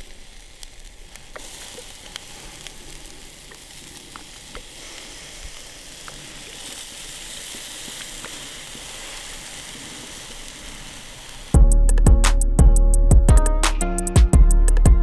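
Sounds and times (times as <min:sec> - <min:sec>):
steak sizzling: 0:00.0 - 0:11.6.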